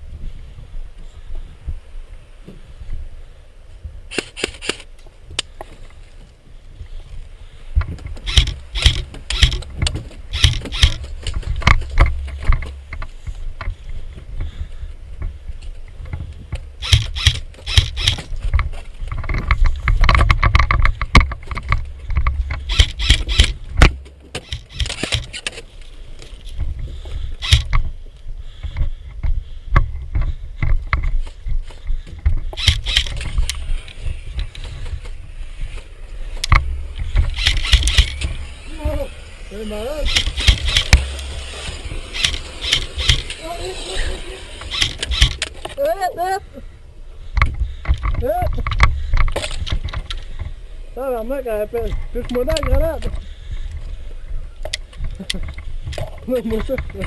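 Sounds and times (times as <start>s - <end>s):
footsteps crunching over rough ground: 0.0s - 57.0s
low rumble of wind: 0.0s - 57.0s
camera handling noise: 4.1s - 5.6s, 8.0s - 13.1s, 16.8s - 26.6s, 27.4s - 27.8s, 32.4s - 38.5s, 40.0s - 43.4s, 44.5s - 45.8s.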